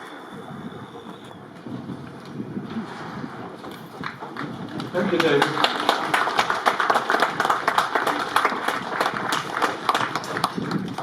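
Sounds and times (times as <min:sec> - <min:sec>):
crowd applauding: 0:03.9 - 0:11.0.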